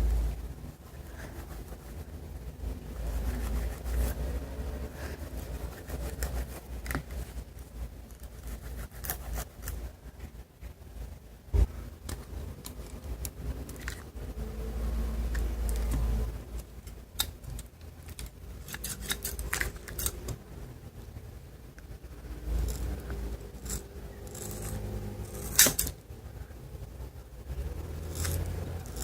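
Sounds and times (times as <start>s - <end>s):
utensils clicking and scraping: 15.3s - 20.4s, 22.6s - 26.0s, 27.9s - 29.0s.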